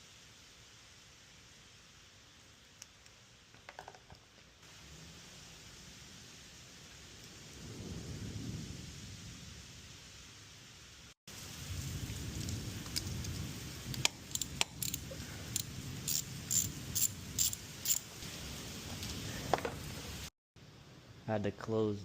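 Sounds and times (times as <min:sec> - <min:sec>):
steady rain: 0:00.0 - 0:03.6, 0:04.6 - 0:20.3
sharp metallic clicks and clinks: 0:14.0 - 0:15.0, 0:15.6 - 0:18.1.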